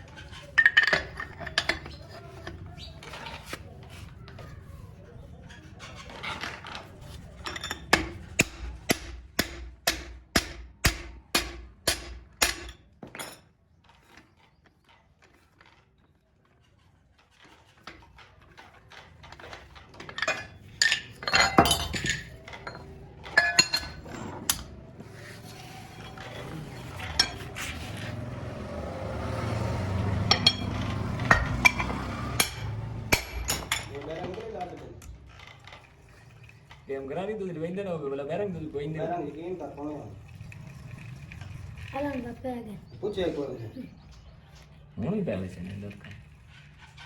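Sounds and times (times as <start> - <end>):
metallic knocks and clinks: 0.0 - 3.3, 5.8 - 13.6, 19.0 - 25.0, 25.8 - 36.9
hammer striking metal: 7.9 - 12.8, 30.2 - 33.9.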